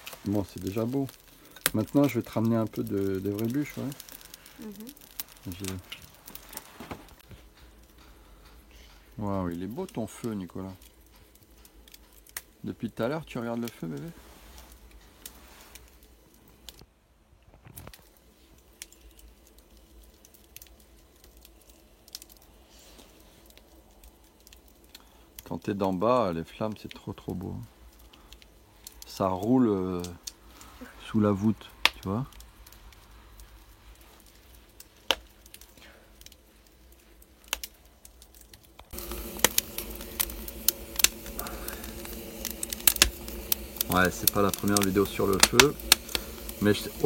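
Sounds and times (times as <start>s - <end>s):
kindling fire crackling: 0.0s - 47.0s
steady hum: 39.0s - 47.0s.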